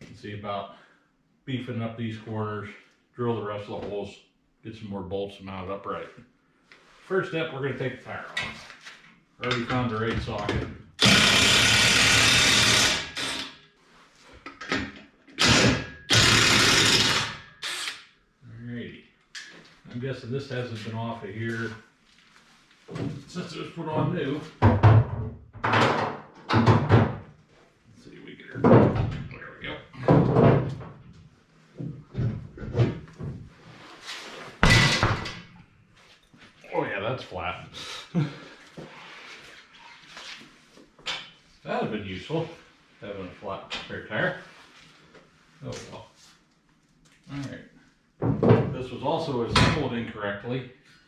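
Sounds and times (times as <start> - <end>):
power wrench loosening lug nuts: 11.0 - 13.6, 15.3 - 18.0.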